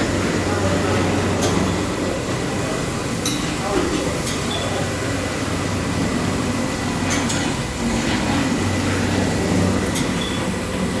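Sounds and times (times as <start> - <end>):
carpet-cleaning machine running: 4.8 - 11.0.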